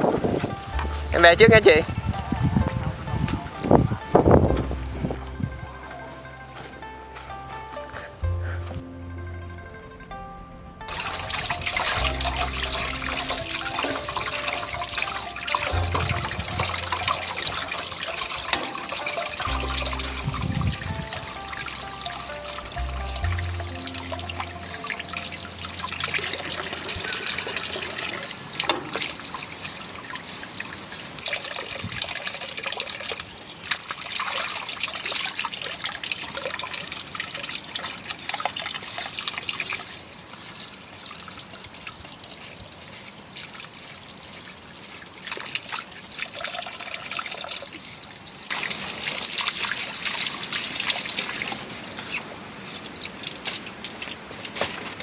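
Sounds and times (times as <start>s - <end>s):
water trickling and splashing: 0.0s - 8.8s, 10.9s - 55.0s.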